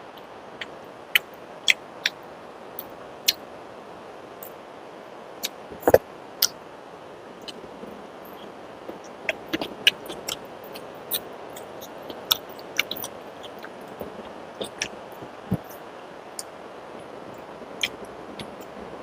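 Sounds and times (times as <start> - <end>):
steady low hiss: 0.0 - 19.0
mouth chewing smacks: 8.4 - 15.8.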